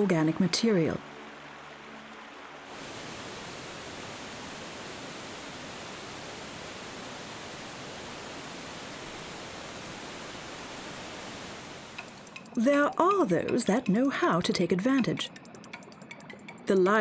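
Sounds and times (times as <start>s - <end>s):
glacial stream rushing: 0.0s - 12.2s.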